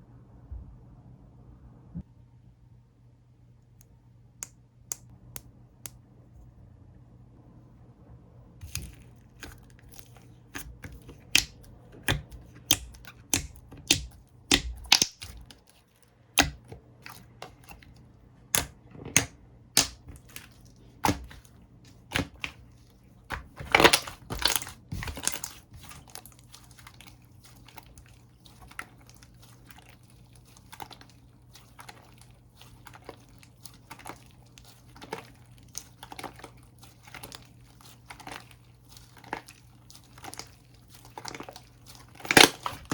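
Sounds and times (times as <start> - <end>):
slime squeezed sticky pops: 10.6 - 15.6, 16.4 - 17.8, 18.6 - 22.6.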